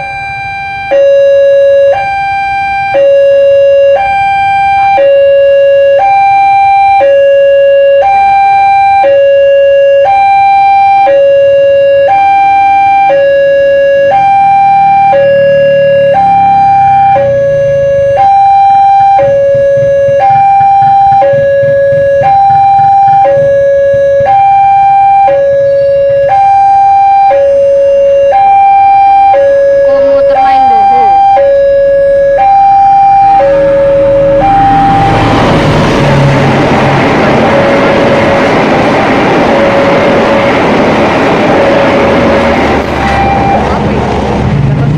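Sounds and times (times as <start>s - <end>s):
level-crossing two-tone siren: 0.0s - 44.6s
low rumble: 28.9s - 44.9s.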